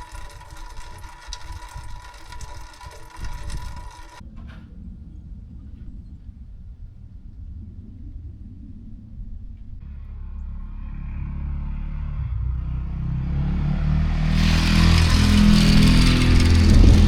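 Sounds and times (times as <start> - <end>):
vehicle approaching: 9.8 - 17.0.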